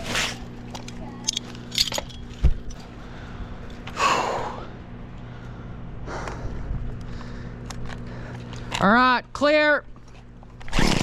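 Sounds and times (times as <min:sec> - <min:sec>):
person breathing hard: 0:02.9 - 0:08.7.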